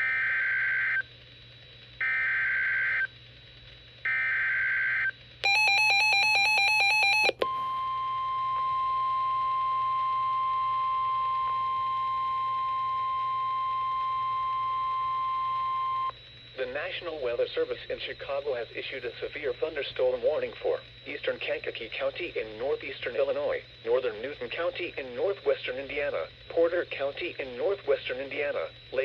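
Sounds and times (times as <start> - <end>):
rapidly switching electronic tone: 5.4 - 7.5.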